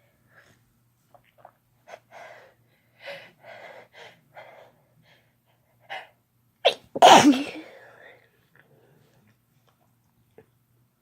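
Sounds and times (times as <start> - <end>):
person sneezing loudly: 6.6 - 7.8.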